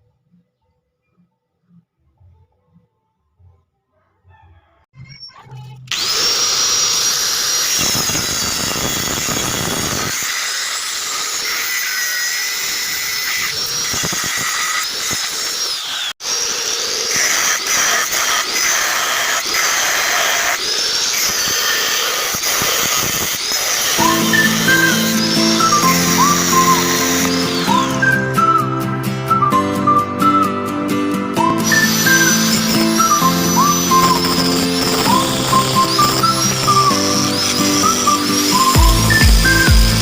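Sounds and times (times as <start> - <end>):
electric grinder grinding steel: 5.9 - 28.6, 31.4 - 40.0.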